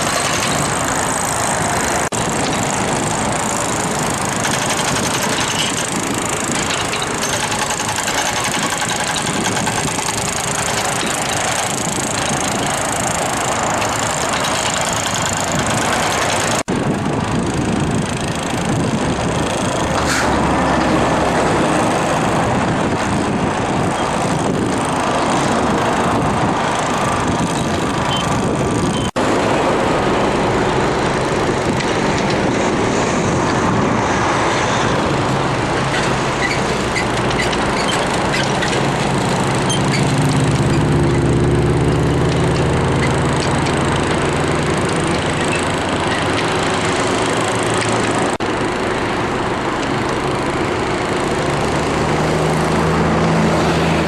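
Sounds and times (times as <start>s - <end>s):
crackly buffeting: 0.0s - 54.0s
vehicle road noise: 0.0s - 54.0s.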